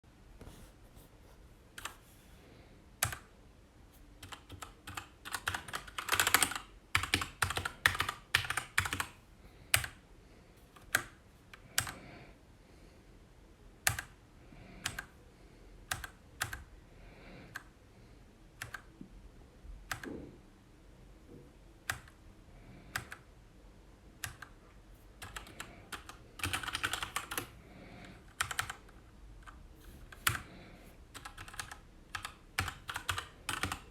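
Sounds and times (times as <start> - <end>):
mechanical keyboard keys clicking: 4.2 - 9.1, 13.9 - 14.2, 19.9 - 20.1, 25.2 - 27.5, 28.3 - 29.6, 31.2 - 33.8.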